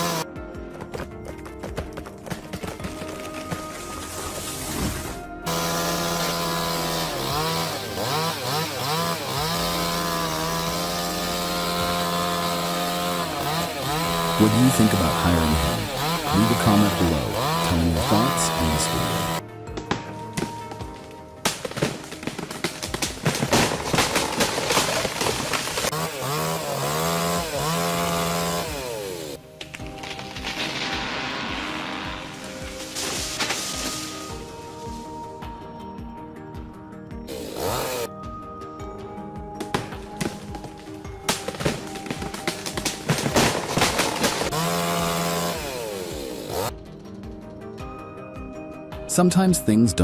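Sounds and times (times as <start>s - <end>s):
chainsaw running at high revs: 0.0s - 0.3s, 5.5s - 19.4s, 21.6s - 29.4s, 31.6s - 35.3s, 37.3s - 38.1s, 39.8s - 46.8s
sharp cracks and knocks: 19.7s - 26.1s, 29.6s - 31.8s, 32.4s - 34.4s, 39.6s - 44.8s.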